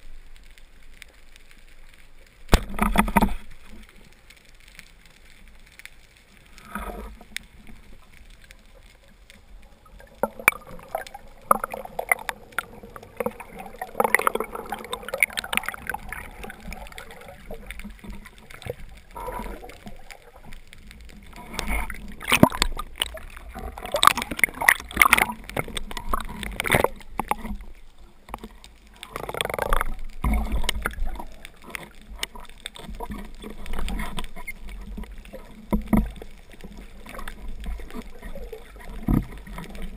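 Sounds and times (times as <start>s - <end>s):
water sloshing and gurgling: 2.4s - 5.4s, 6.0s - 39.9s.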